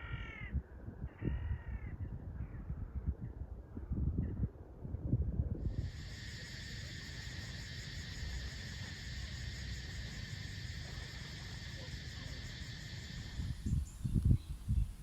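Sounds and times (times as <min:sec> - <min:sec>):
insects trilling: 0:05.7 - 0:15.0.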